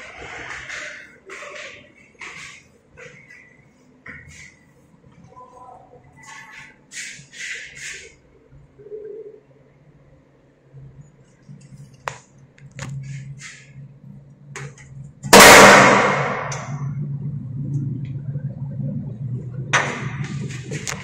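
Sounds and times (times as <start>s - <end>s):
low steady hum: 8.5s - 21.0s
very loud bang: 15.3s - 17.0s.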